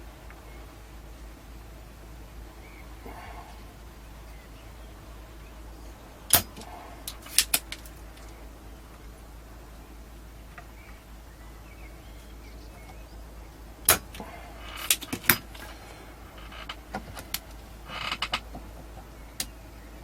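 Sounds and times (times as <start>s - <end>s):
low hum: 0.0s - 20.0s
hand tools clicking on circuit board: 14.8s - 15.7s.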